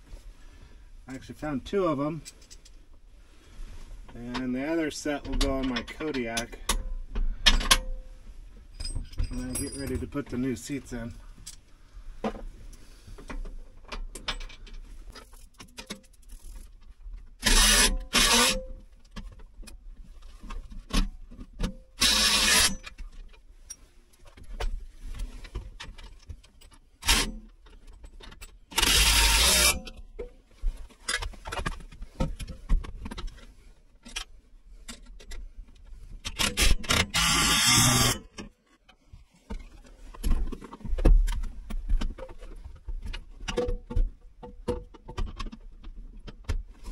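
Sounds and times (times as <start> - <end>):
metal hardware clanking: 8.8 - 10.4
handheld power tool bursts: 17.4 - 18.6, 22.0 - 22.8, 27.0 - 27.4, 28.8 - 29.9, 36.4 - 38.3.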